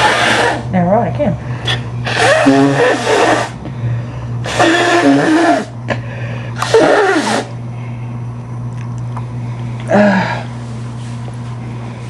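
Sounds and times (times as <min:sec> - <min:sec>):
steady low hum: 0:00.0 - 0:12.0
person sneezing loudly: 0:06.6 - 0:07.5.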